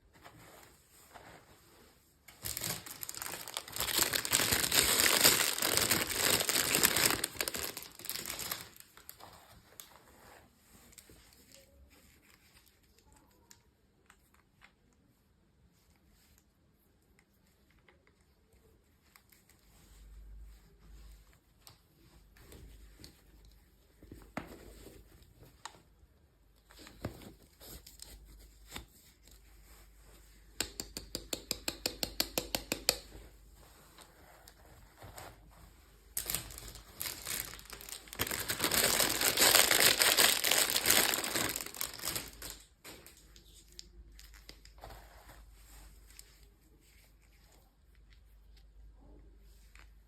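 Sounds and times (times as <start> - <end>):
plastic packaging crinkling and tearing: 2.3 - 9.9, 36.2 - 44.8.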